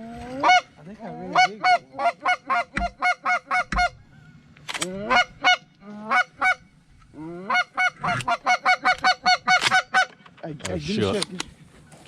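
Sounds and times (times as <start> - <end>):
goose honking: 0.3 - 4.3, 4.9 - 10.2.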